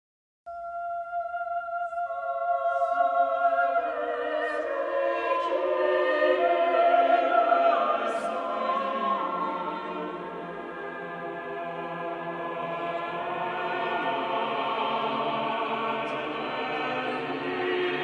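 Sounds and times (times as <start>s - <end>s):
choir-like voices holding a chord: 0.6s - 18.0s.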